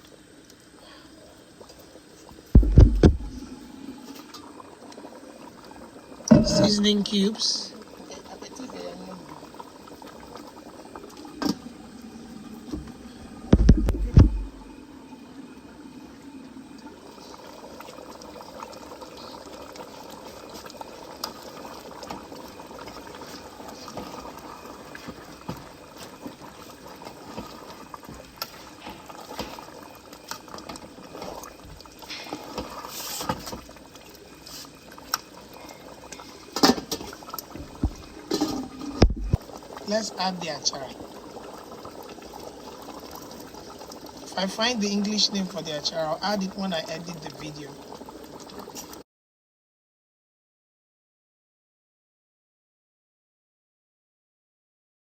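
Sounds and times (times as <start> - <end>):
soup bubbling at a boil: 0.0 - 49.0
sharp knocks: 2.6 - 3.3
loud low thump: 2.6 - 3.5, 13.5 - 14.7, 39.0 - 39.4.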